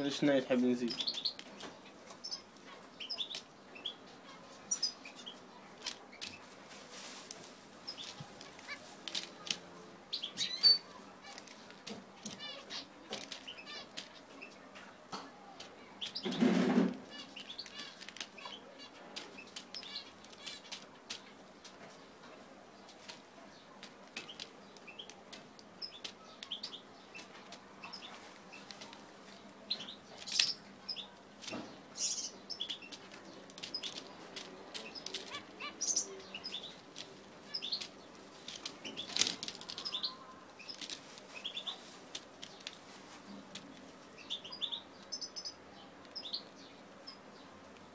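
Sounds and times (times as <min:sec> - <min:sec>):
finches chirping: 0:00.0 - 0:06.5, 0:07.8 - 0:22.2, 0:22.8 - 0:42.8, 0:43.5 - 0:47.9
finches fluttering wings: 0:05.8 - 0:09.7, 0:10.4 - 0:14.9, 0:15.5 - 0:21.9, 0:22.9 - 0:43.9.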